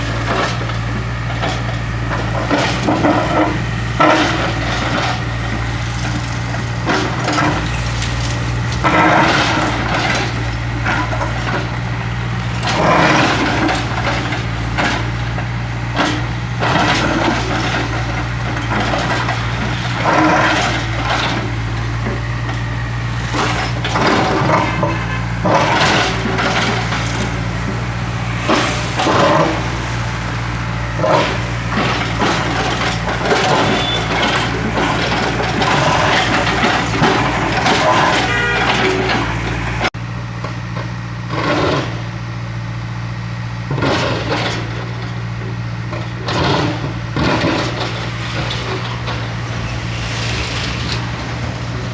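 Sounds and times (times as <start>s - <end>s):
excavator engine running: 0.0s - 51.9s
concrete cracking and crashing: 30.9s - 39.4s.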